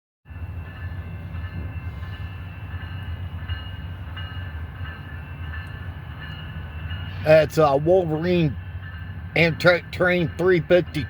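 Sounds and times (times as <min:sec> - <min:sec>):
diesel locomotive humming: 0:00.3 - 0:11.0.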